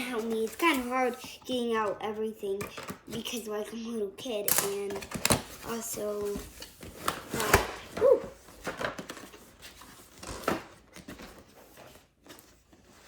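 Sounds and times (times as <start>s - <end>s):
toy packaging knocks and clicks: 2.6s - 3.3s, 4.4s - 8.0s.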